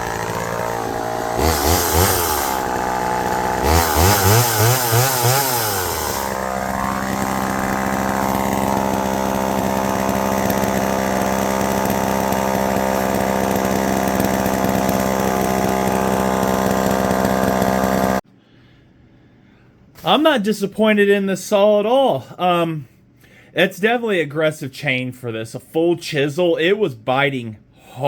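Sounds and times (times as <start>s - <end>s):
chainsaw engine revving and idling: 0.0s - 18.2s.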